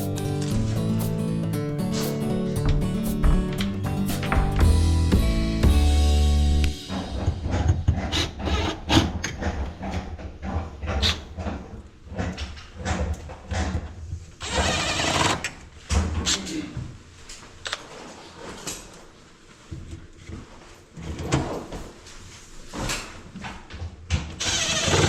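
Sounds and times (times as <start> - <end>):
wood knocking and scraping: 2.0 - 5.1.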